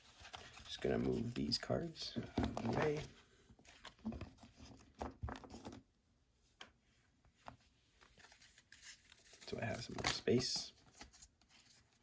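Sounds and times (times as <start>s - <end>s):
cards rustling and tapping: 2.2s - 5.8s, 7.4s - 12.0s.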